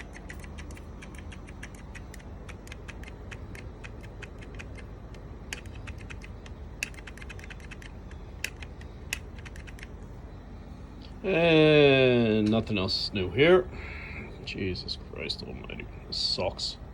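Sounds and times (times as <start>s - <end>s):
rapid light clicking: 0.0s - 9.9s
low steady hum: 0.0s - 16.9s.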